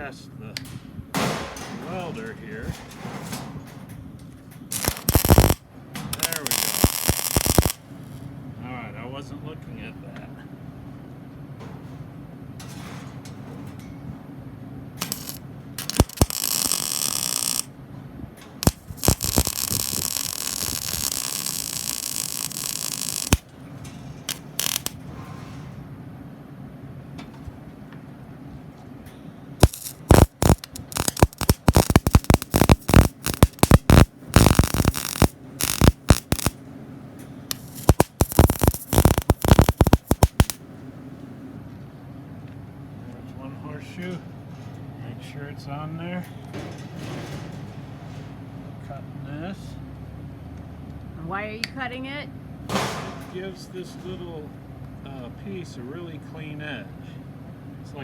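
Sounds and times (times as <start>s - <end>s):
welding machine low hum: 4.2s - 8.4s, 11.6s - 25.2s, 29.6s - 40.8s
welding arc crackling and sizzling: 4.7s - 8.3s, 15.0s - 17.7s, 18.6s - 23.5s, 24.2s - 25.0s, 29.6s - 36.6s, 37.5s - 40.6s.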